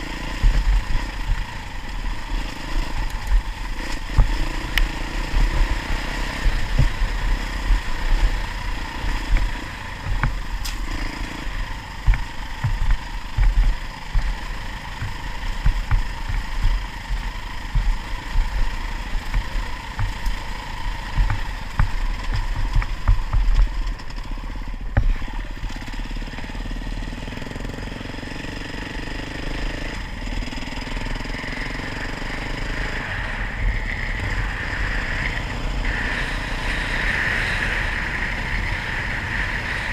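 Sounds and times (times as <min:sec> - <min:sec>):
motorcycle engine running: 0:00.0 - 0:39.9
low thumps and knocks: 0:00.4 - 0:01.5, 0:03.0 - 0:24.2.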